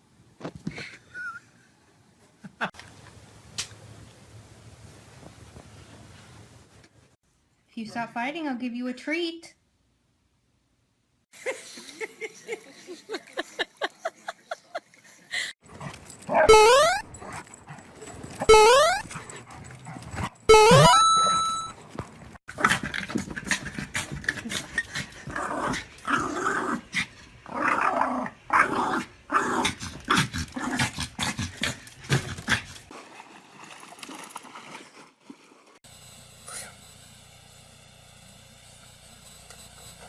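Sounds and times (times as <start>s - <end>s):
dog yelping barks: 16.3s - 17.1s
dog growling and snarling: 22.5s - 33.0s.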